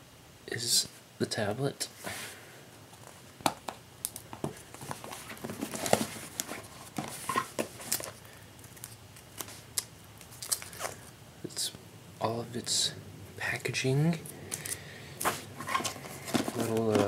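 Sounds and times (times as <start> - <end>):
packaging rustling: 4.1 - 9.6, 10.2 - 11.1, 14.5 - 17.0.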